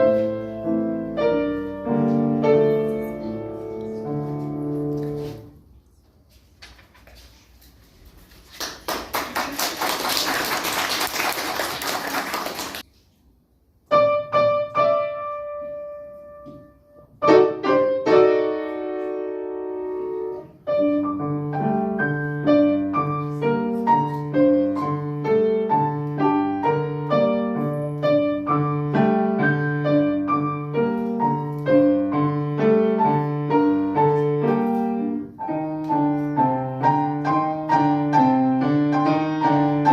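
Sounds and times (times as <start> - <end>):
piano piece: 0.0 - 5.8, 13.8 - 39.9
applause: 8.3 - 12.8.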